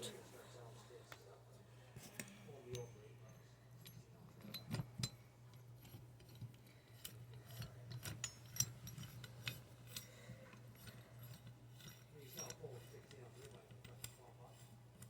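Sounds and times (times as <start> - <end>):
steady low hum: 0.0 - 15.0
metallic clicks of hand tools: 3.8 - 14.2.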